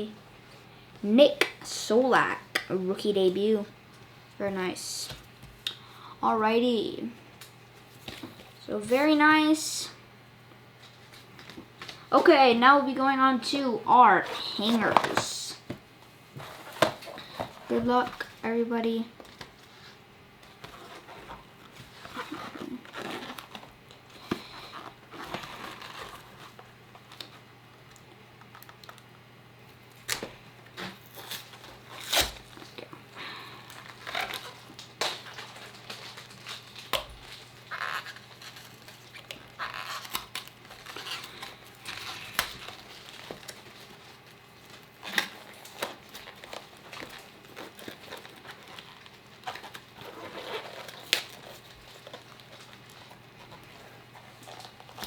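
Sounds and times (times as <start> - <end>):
cardboard and wrappers tearing: 20.5 - 27.4, 30.0 - 55.0.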